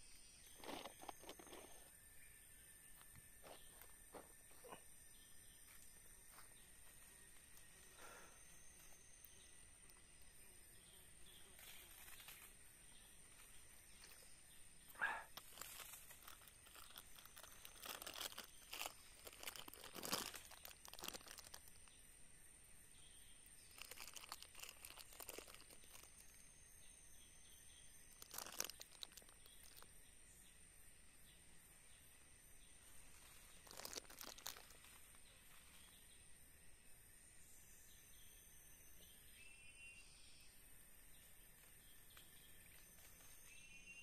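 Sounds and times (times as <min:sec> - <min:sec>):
rustling and crunching: 0:00.5 - 0:02.0, 0:11.4 - 0:12.6, 0:15.0 - 0:22.0, 0:23.6 - 0:26.5, 0:27.9 - 0:29.9, 0:32.9 - 0:36.0.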